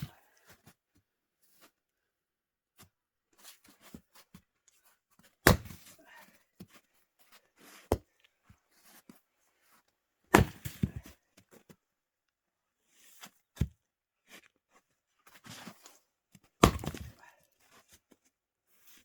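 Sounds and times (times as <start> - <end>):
axe splitting firewood: 5.4 - 6.0, 10.3 - 11.1, 16.6 - 17.2.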